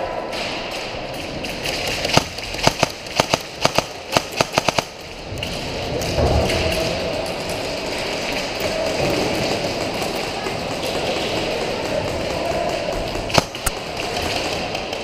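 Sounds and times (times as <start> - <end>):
airsoft gun shots: 2.0 - 5.0, 13.3 - 13.8.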